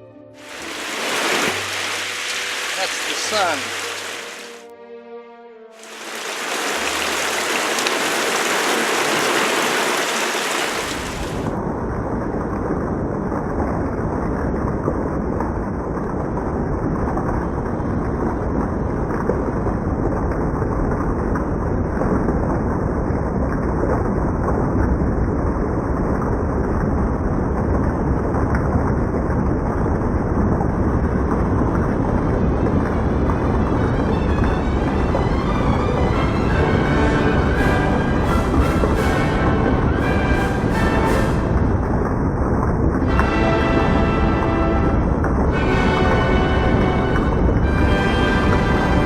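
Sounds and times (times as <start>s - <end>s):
heavy rain pouring: 0.4s - 4.6s, 5.8s - 49.0s
deep rumble: 10.9s - 49.0s.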